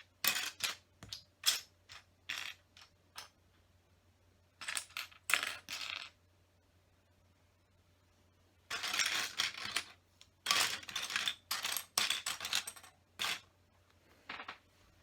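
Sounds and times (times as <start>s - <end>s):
plastic toy bricks clattering: 8.7s - 13.5s.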